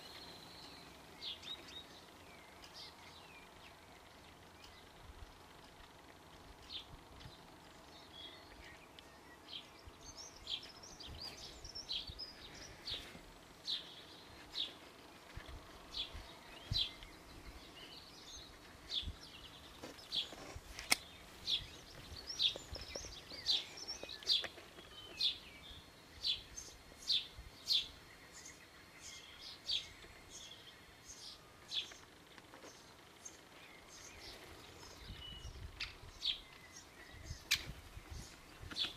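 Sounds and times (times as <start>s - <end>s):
sharp click: 20.8s - 21.2s.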